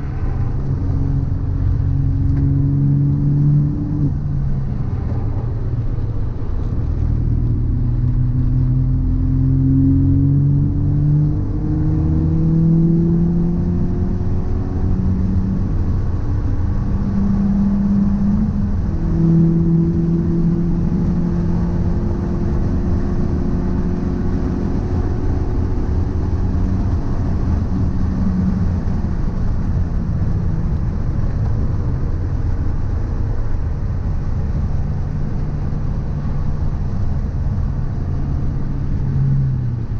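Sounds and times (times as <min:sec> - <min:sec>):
car driving with low rumble: 0:00.0 - 0:39.9
humming tones: 0:16.8 - 0:22.0.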